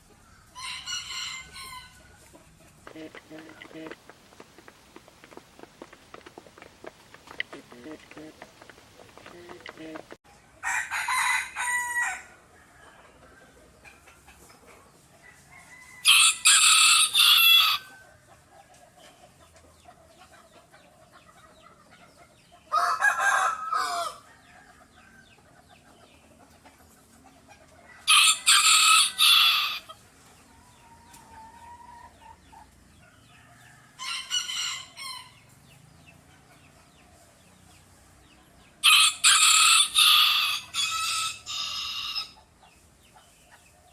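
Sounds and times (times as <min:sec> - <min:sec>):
rooster crowing: 0:00.6 - 0:02.0, 0:07.3 - 0:12.3, 0:15.6 - 0:18.0, 0:22.7 - 0:24.4, 0:28.0 - 0:29.9, 0:38.8 - 0:42.4.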